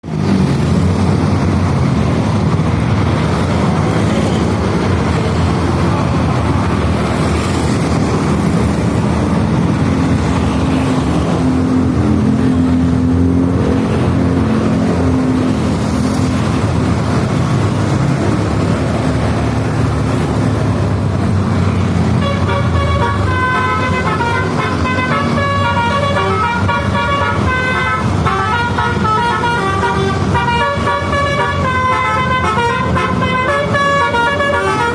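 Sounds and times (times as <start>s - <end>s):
bus diesel engine running: 0.0s - 34.9s
musical horn melody: 22.2s - 34.9s.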